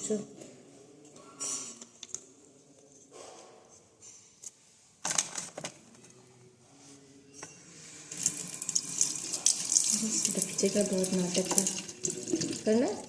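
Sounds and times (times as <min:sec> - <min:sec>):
water running into sink: 0:08.1 - 0:13.0.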